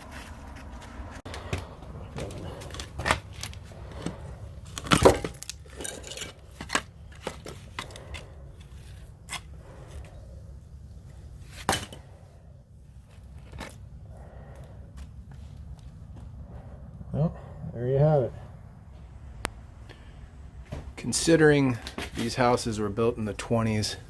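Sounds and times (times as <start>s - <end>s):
concrete and dirt being dug: 0.0s - 10.4s.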